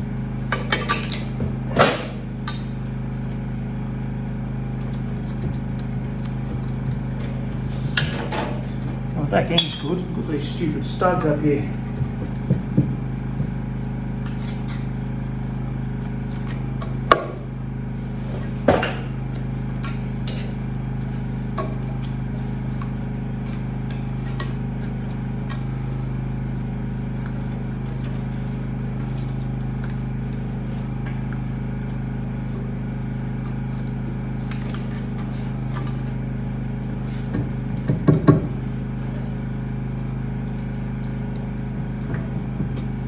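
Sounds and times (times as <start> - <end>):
steady low hum: 0.0 - 43.0
metal tools clanking on engine: 7.2 - 11.6.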